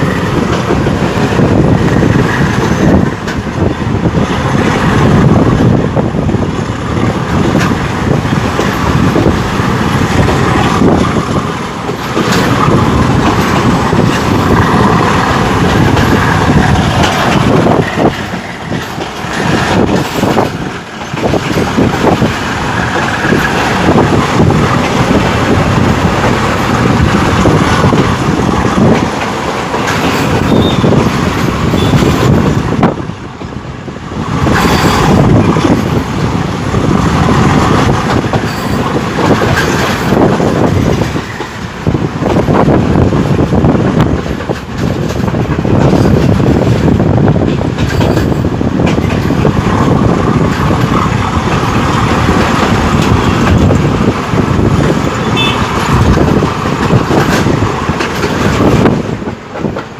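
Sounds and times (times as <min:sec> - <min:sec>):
train rumbling over rails: 0:00.0 - 0:59.9
clicks at rail joints: 0:11.8 - 0:14.4, 0:55.8 - 0:59.9.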